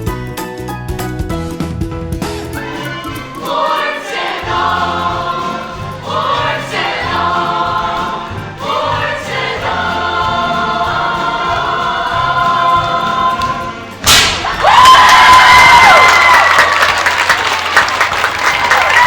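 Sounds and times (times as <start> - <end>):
instrumental accompaniment: 0.0 - 14.6
ensemble of voices singing: 2.5 - 14.0.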